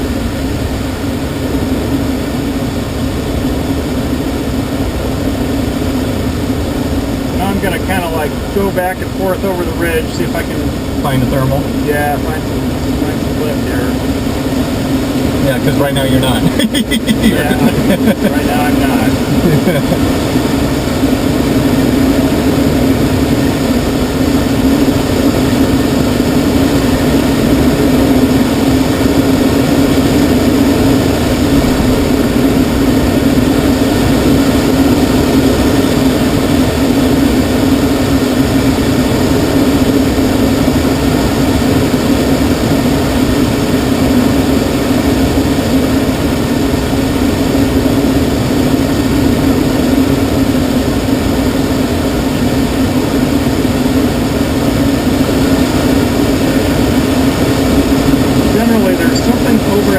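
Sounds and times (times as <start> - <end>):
constant low drone: 0.0 - 59.9
air rushing over glider: 17.7 - 59.5.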